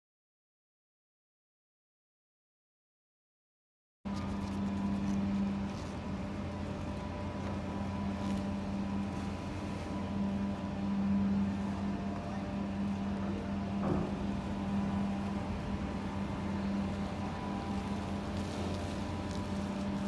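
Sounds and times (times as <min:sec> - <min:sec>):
ship engines humming: 0:04.6 - 0:20.0.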